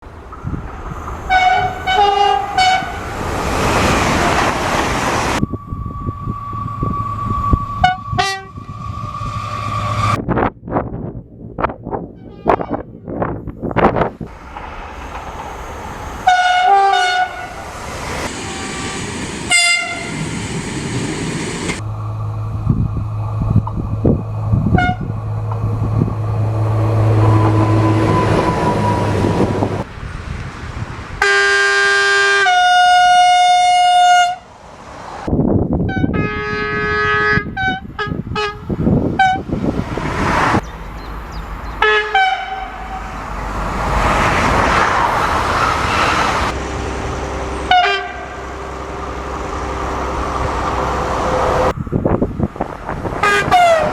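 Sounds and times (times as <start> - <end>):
trains running hum: 0.0 - 10.2, 12.6 - 35.3, 37.6 - 53.9
train horn toots: 1.3 - 3.1, 5.4 - 10.2, 12.2 - 13.1, 16.2 - 17.7, 19.5 - 20.3, 24.6 - 29.8, 31.2 - 34.4, 35.9 - 39.4, 41.8 - 43.1, 45.1 - 51.8, 53.1 - 53.9
two-tone train horn blast: 1.3 - 3.1, 5.4 - 10.2, 12.2 - 12.9, 16.2 - 17.7, 19.5 - 20.3, 24.5 - 29.8, 31.2 - 34.5, 35.9 - 39.4, 41.8 - 43.1, 45.0 - 51.8, 53.1 - 53.9.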